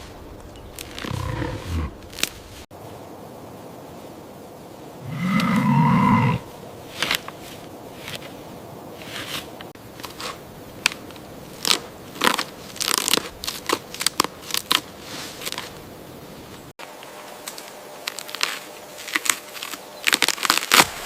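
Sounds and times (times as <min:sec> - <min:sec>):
soft steady hiss: 0:00.0 - 0:21.0
twigs and brush breaking: 0:10.8 - 0:15.7, 0:17.4 - 0:21.0.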